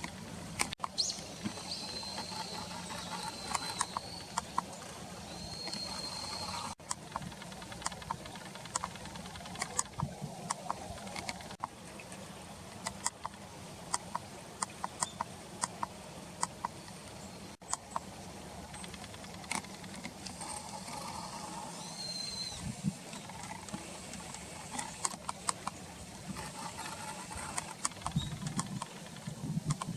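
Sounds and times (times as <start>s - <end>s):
light sharp ticks and taps: 6.7s - 11.8s, 27.4s - 29.9s.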